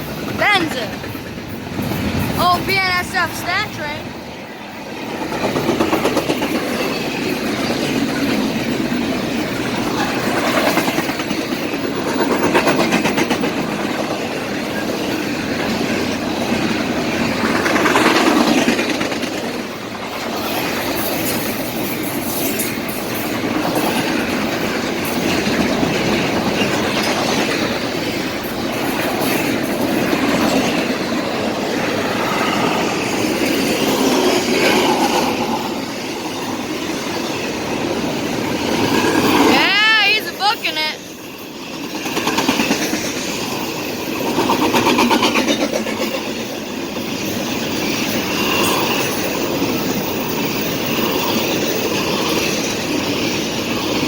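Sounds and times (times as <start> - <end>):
train wheels on rail: 0.0 - 54.0
clatter over rail joints: 5.2 - 32.0.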